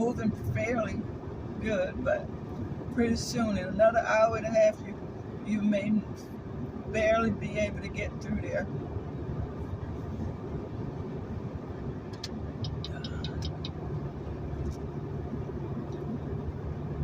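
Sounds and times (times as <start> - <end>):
car road and engine rumble: 0.0 - 17.0
quick light ticks: 12.1 - 13.8.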